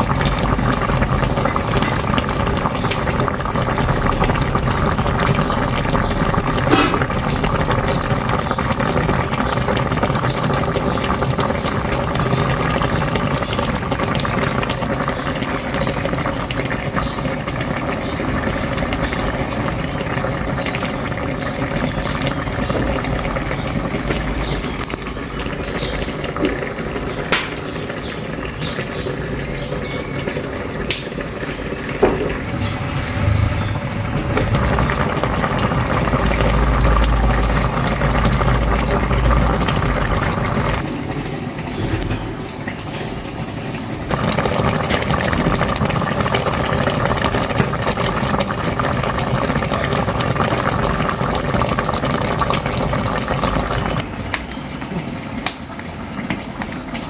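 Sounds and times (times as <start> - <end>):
pot boiling with bubbling pops: 0.0 - 57.0
low rumble: 32.4 - 40.8.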